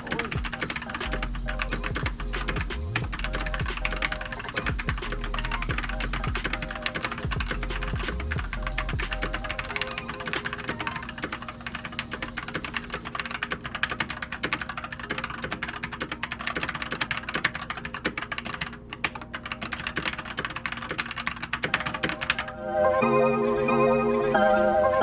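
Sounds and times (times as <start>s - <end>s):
fast typing on mechanical keyboard: 12.4s - 22.4s.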